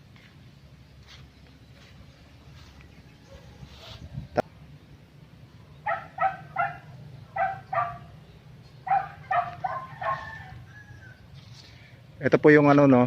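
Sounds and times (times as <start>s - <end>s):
dog barking: 5.8s - 8.1s, 8.8s - 10.4s.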